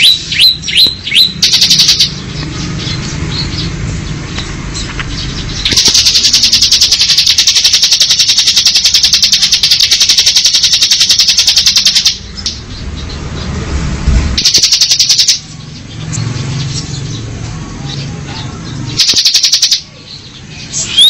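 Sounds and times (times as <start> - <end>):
bird rattling trill: 0.0 - 12.6, 14.4 - 15.5, 19.0 - 19.9.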